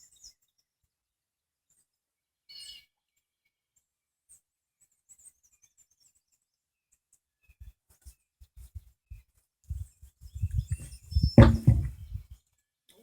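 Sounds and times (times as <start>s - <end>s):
low thumps and knocks: 10.4s - 12.2s.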